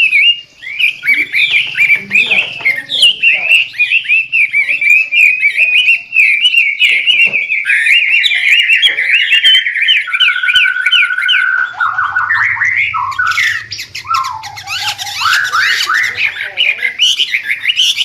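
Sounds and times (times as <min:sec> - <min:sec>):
bird singing: 0:00.0 - 0:18.0.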